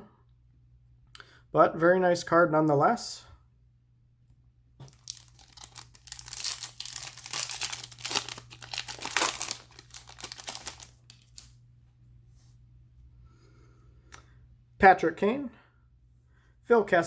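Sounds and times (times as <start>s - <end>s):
wrapper crinkling and tearing: 4.8s - 11.6s.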